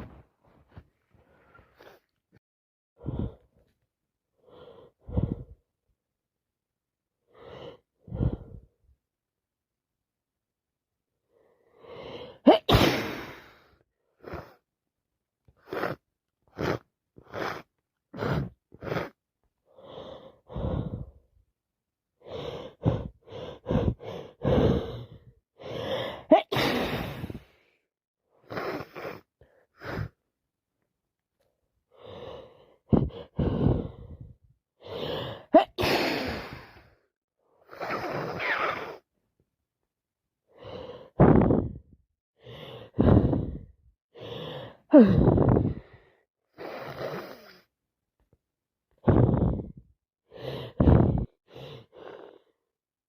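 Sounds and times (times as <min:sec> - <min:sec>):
person sneezing: 0:12.5 - 0:13.6, 0:26.3 - 0:27.4, 0:35.5 - 0:36.8
gasping in-breaths and sniffs: 0:15.6 - 0:21.3, 0:22.2 - 0:30.3, 0:31.9 - 0:39.0, 0:40.5 - 0:47.7, 0:48.9 - 0:52.6.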